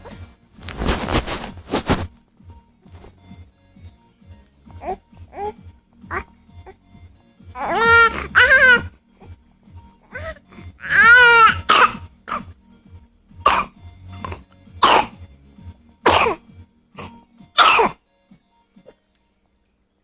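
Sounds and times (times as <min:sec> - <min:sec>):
harsh coughs: 0:11.4 - 0:12.5, 0:13.4 - 0:15.2, 0:16.0 - 0:18.0.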